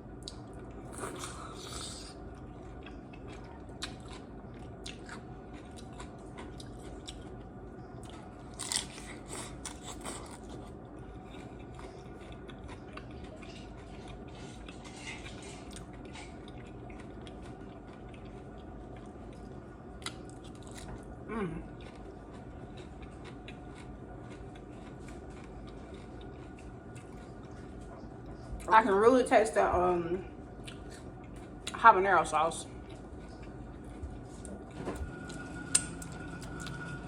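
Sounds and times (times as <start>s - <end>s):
steady low hum: 0.0s - 37.0s
crunchy chewing: 0.2s - 28.7s.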